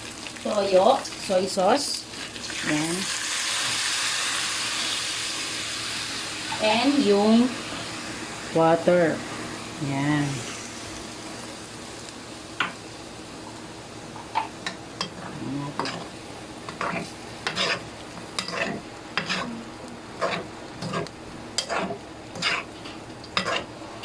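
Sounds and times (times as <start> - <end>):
pan sizzling: 0.0 - 24.0
utensil scraping frying pan: 14.4 - 19.6, 20.2 - 23.8.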